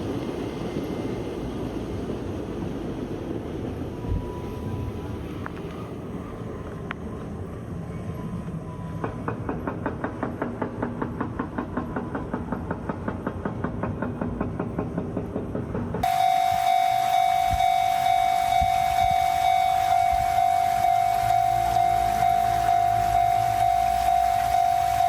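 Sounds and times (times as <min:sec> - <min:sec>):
train rumble: 0:00.0 - 0:25.0
train wheels clicking: 0:08.9 - 0:25.0
train whistle: 0:16.0 - 0:25.0.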